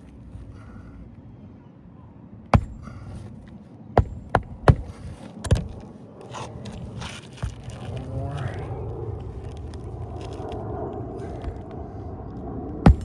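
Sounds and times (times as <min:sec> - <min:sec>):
nails driven into shingles: 0:02.6 - 0:03.4, 0:04.0 - 0:05.9.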